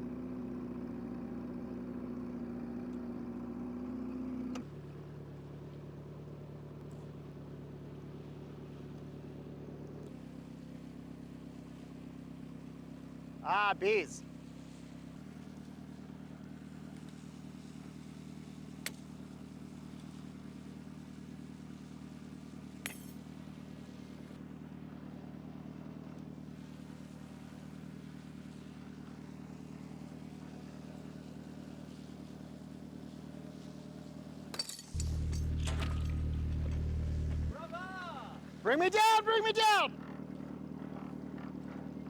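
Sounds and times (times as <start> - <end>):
engine idling: 35.0 - 39.9.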